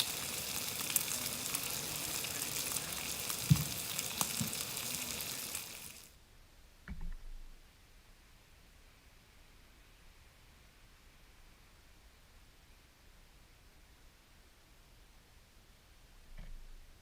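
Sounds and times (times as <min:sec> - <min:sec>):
food sizzling in a pan: 0:00.0 - 0:06.2.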